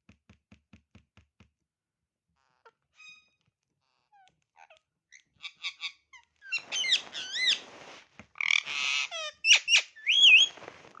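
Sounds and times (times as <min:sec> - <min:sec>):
parrot squawk: 0:04.6 - 0:07.6, 0:08.4 - 0:10.5.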